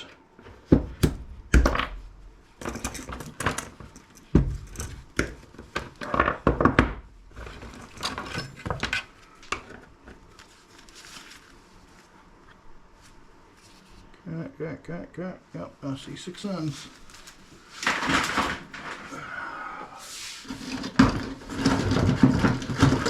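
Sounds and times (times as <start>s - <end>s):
scrap parts knocking and clattering: 1.6s - 9.8s, 17.8s - 19.2s, 20.4s - 23.0s.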